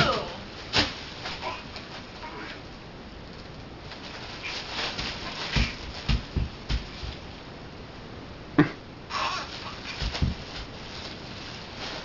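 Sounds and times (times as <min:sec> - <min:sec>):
bubble wrap popping: 0:00.0 - 0:02.3, 0:03.8 - 0:07.4, 0:09.1 - 0:12.0
bubble wrap crinkling: 0:00.0 - 0:07.5, 0:09.1 - 0:12.0
dull thumps: 0:04.9 - 0:07.3, 0:10.0 - 0:10.8.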